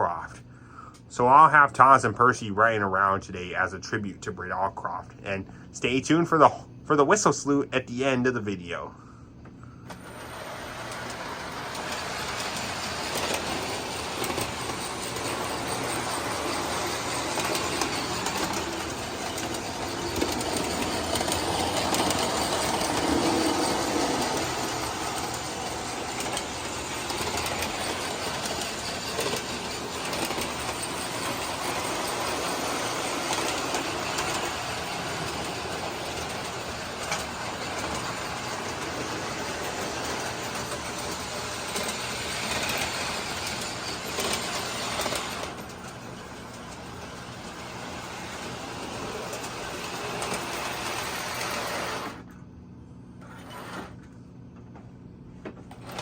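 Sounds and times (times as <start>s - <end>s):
model train wheels rattling: 9.9s - 52.2s
clicking over rail joints: 10.9s - 52.2s.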